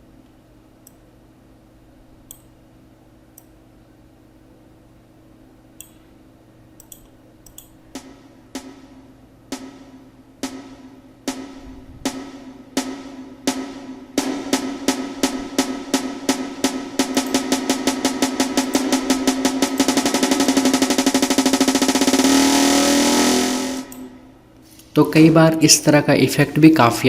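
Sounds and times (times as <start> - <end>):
mouse clicks: 2.3 - 2.5, 5.8 - 6.0, 6.8 - 7.8
snare drum roll build-up: 8.0 - 24.1.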